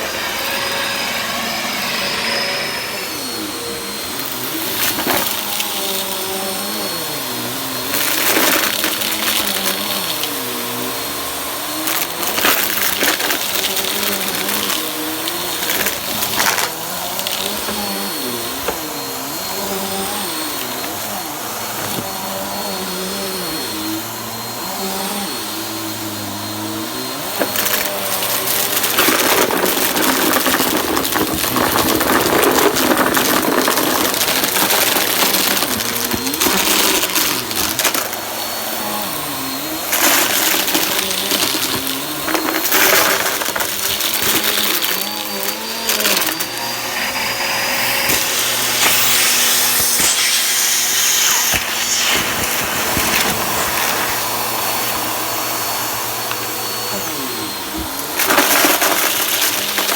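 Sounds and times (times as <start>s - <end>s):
vacuum cleaner running: 0.0s - 59.9s
debris crackling in vacuum: 26.4s - 59.9s.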